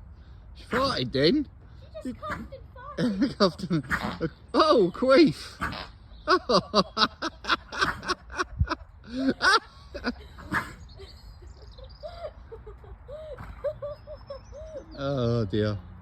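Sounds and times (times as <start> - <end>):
people laughing: 3.0 - 4.5, 6.2 - 15.0
faint high birdsong: 3.4 - 8.3, 8.9 - 16.0.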